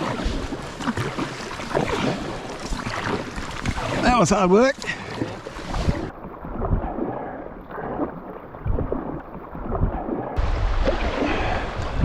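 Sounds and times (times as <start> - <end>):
water sloshing and splashing: 0.0 - 12.0
wind on microphone: 5.6 - 7.2, 8.6 - 12.0.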